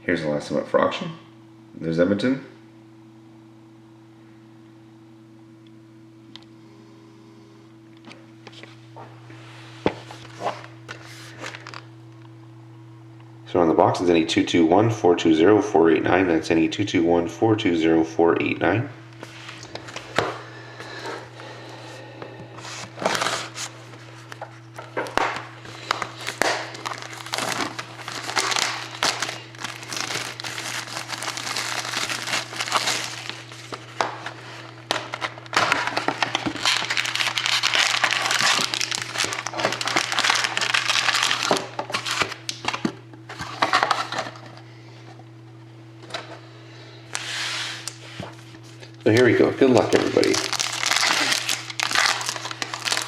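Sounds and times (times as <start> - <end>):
steady low hum: 0.0 - 53.0
plastic shrink wrap crinkling: 10.2 - 11.9, 22.7 - 42.9, 47.2 - 53.0.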